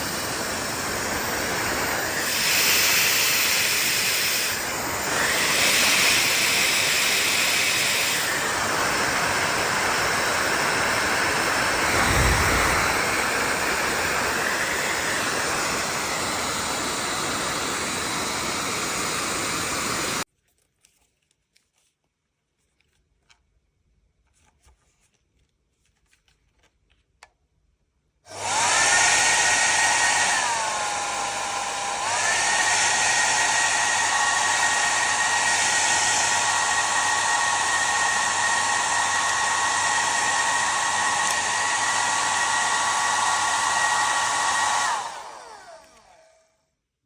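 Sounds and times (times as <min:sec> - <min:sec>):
hair dryer blowing with motor whine: 0:00.0 - 0:20.3, 0:28.3 - 0:46.6.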